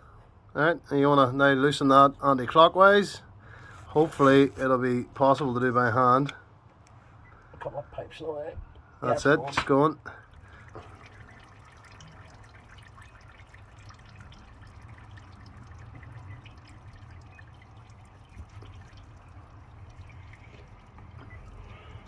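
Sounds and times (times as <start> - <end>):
oil trickling and dripping into bucket: 8.8 - 22.0.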